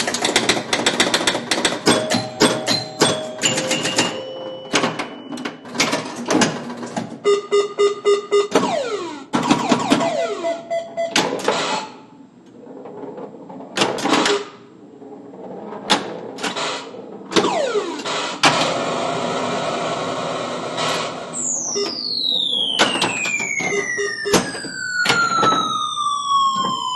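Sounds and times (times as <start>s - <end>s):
long falling electronic tone: 21.3s - 26.9s
short falling electronic tone: 21.4s - 26.9s.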